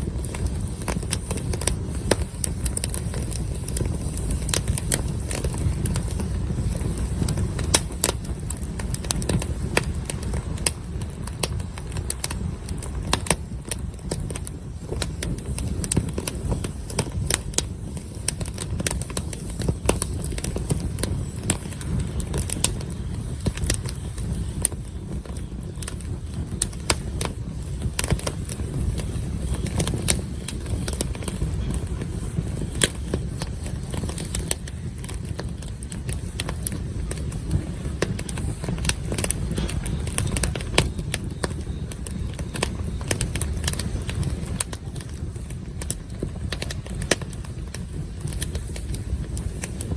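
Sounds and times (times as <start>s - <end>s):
low fire rumble: 0.0s - 49.9s
wood crackling and popping: 0.0s - 49.9s.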